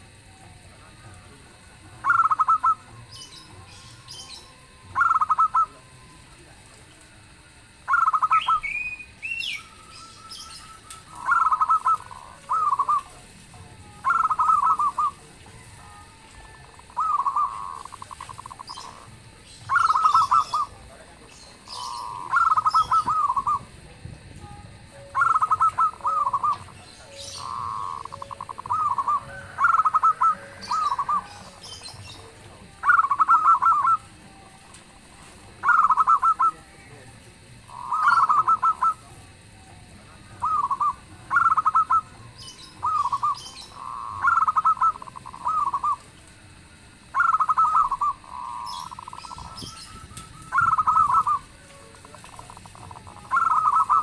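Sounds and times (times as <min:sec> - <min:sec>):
doves cooing: 0:00.0 - 0:54.0.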